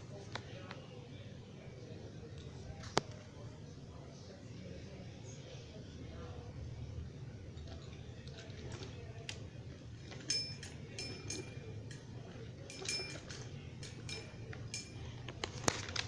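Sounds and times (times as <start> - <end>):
low steady hum: 0.0 - 16.0
toy train pieces clicking: 7.6 - 16.0.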